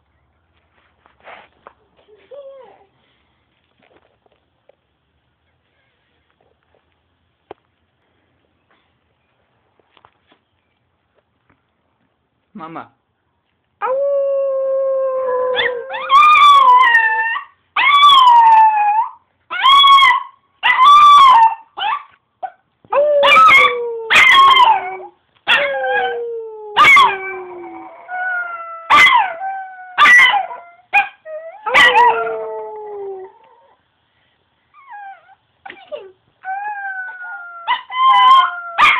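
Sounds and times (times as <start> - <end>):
dog yipping: 19.5 - 22.6, 28.9 - 29.3, 30.0 - 32.1, 37.2 - 38.9
dog howling: 22.9 - 33.8.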